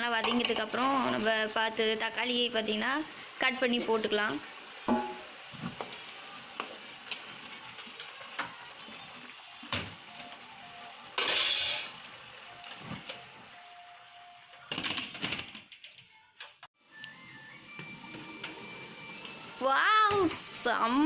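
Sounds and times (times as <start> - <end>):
metal spoon scraping cooking pot: 11.2 - 11.9.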